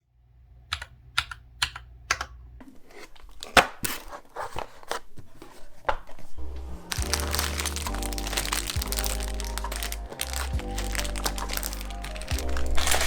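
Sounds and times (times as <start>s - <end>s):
sharp clicks: 0.7s - 2.4s
packaging rustling and crinkling: 6.9s - 13.0s.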